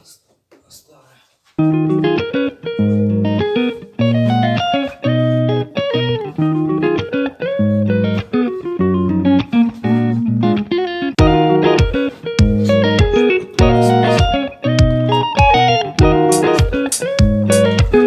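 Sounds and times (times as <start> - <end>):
plucked guitar tune with bass: 1.6 - 18.0.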